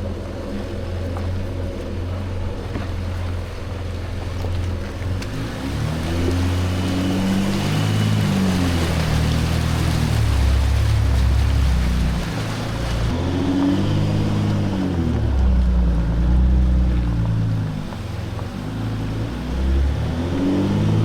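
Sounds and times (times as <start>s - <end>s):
diesel engine running and revving: 0.0s - 21.0s.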